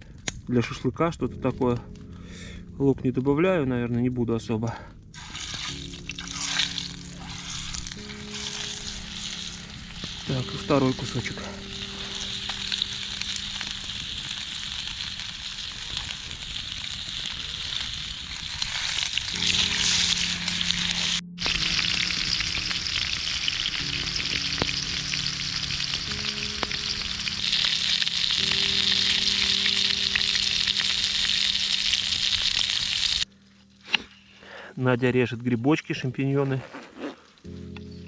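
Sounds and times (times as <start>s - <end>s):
soft background music: 0.0s - 36.6s, 37.4s - 38.0s
meat sizzling in a pan: 5.2s - 33.3s.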